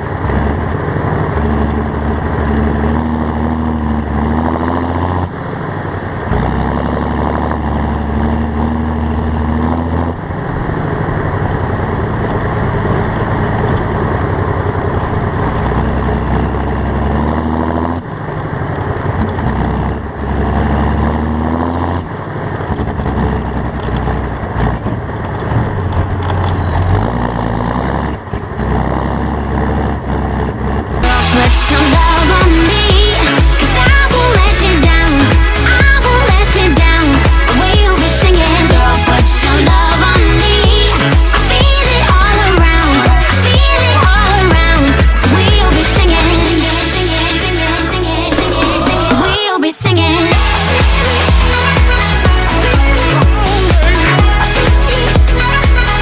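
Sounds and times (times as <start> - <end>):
high whine: 0.0 - 28.6, 29.3 - 56.0
tractor diesel engine under load: 0.0 - 56.0.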